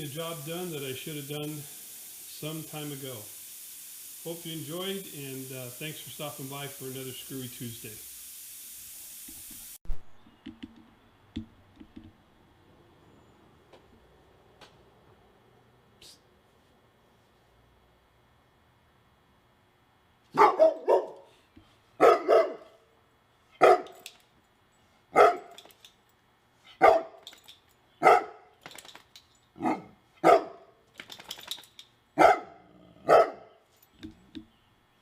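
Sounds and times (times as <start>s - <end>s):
dog barking: 20.3s - 21.3s, 22.0s - 22.8s, 23.6s - 24.0s, 25.1s - 25.6s, 26.8s - 27.2s, 28.0s - 28.5s, 29.6s - 30.7s, 32.2s - 33.6s.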